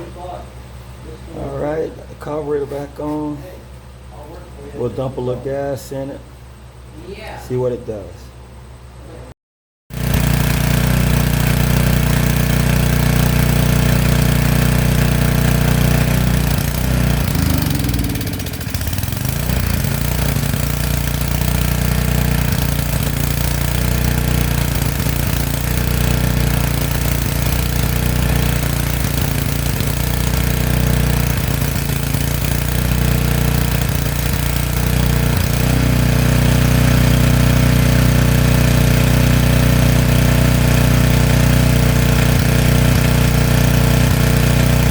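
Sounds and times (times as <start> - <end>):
small generator engine running unevenly: 9.9 - 44.9.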